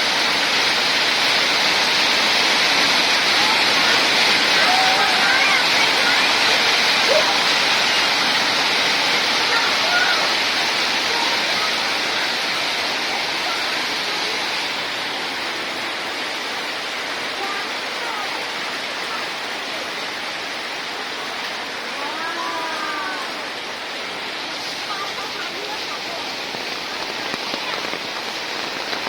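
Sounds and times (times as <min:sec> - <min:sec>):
hail and rain pelting down: 0:00.0 - 0:29.0.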